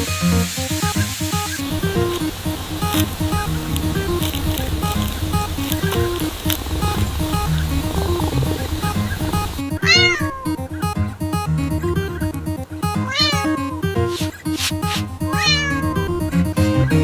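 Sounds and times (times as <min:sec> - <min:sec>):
background music: 0:00.0 - 0:17.0
cat meowing: 0:09.8 - 0:10.6, 0:13.1 - 0:13.7, 0:15.2 - 0:16.2.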